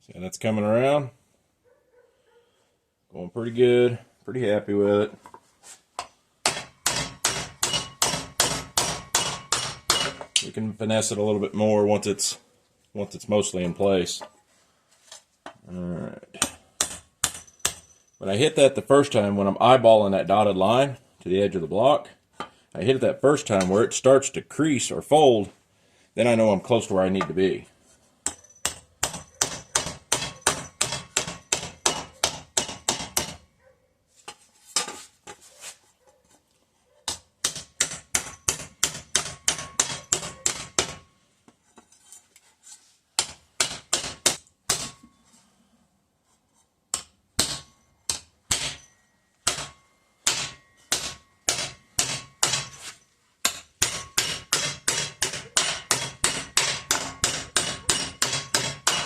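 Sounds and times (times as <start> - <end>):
hammer striking steel: 6.4 - 10.4, 16.4 - 18.0, 28.2 - 33.4, 37.1 - 41.1, 43.2 - 45.2, 46.9 - 59.0.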